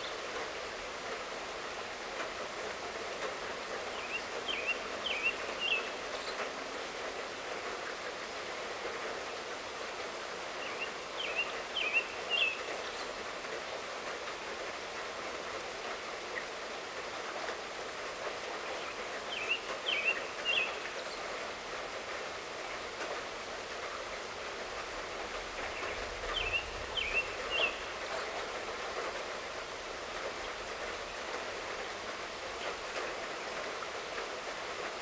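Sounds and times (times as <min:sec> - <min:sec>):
light rain falling: 0:00.0 - 0:35.0
bird chirping: 0:04.0 - 0:06.3, 0:10.6 - 0:13.1, 0:19.3 - 0:20.8, 0:25.8 - 0:27.9.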